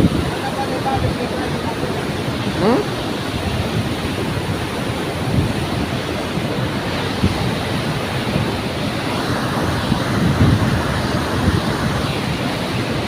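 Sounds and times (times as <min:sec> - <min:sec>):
falling water rushing: 0:00.0 - 0:13.0
wind buffeting microphone: 0:00.0 - 0:13.0.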